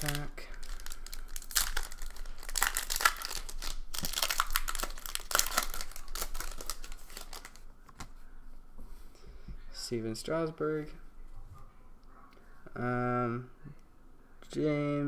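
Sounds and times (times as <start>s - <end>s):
card pack wrapper tearing and crinkling: 0.0s - 8.1s.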